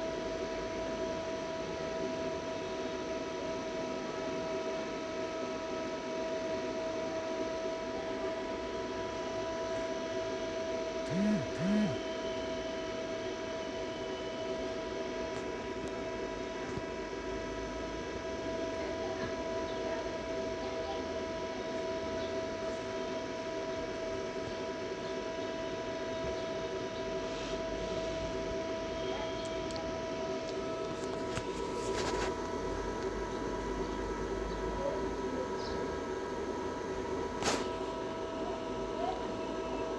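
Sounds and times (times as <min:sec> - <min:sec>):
electrical hum: 0:11.0 - 0:12.2, 0:24.0 - 0:39.9
short low blips: 0:11.1 - 0:12.0
light hiss: 0:37.4 - 0:38.0.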